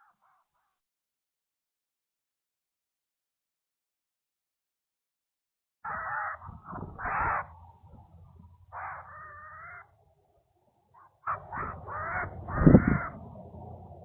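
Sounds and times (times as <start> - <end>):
short animal calls: 11.0 - 13.2.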